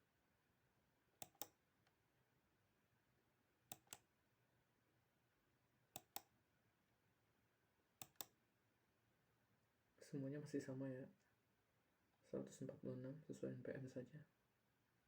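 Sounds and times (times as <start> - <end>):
computer mouse clicking: 1.2 - 2.0, 3.7 - 4.1, 5.9 - 6.3, 8.0 - 8.4.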